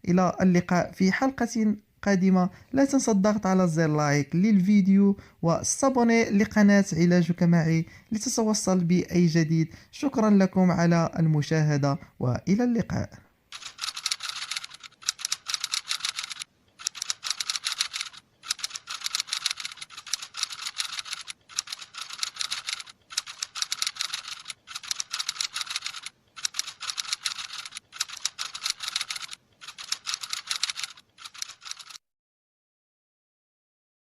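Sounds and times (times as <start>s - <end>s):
rapid dense clicking: 13.5s - 32.0s.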